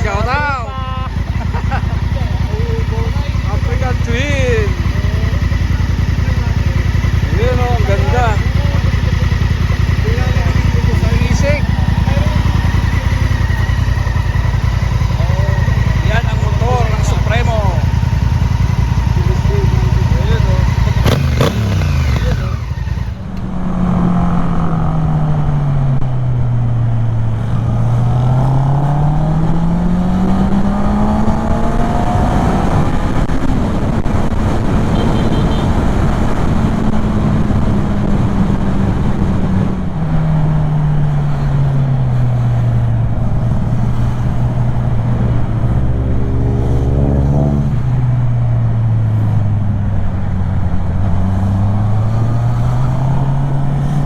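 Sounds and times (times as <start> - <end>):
scooter engine running: 0.0 - 23.6, 28.7 - 38.6
wind and road rush: 0.0 - 54.0.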